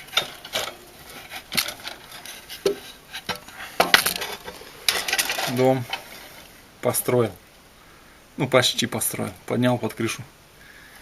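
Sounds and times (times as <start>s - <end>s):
metal parts knocking and clinking: 0.0s - 6.1s
metal parts clattering: 0.0s - 6.5s.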